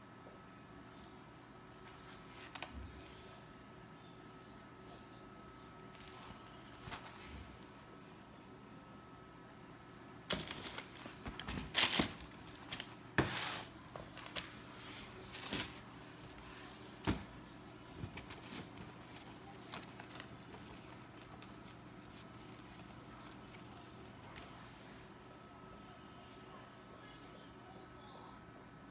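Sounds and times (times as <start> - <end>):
packaging rustling and tapping: 10.3 - 24.6.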